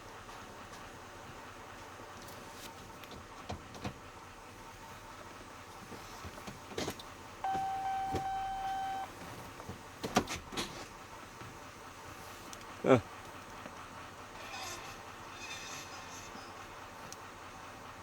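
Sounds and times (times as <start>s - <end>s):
steady electronic beep: 7.4s - 9.1s.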